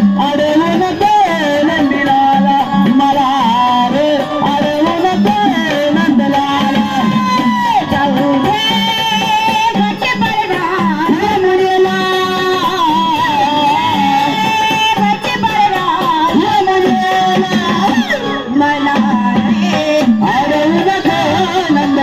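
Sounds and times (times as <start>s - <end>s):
hand drum beat: 0.0s - 22.0s.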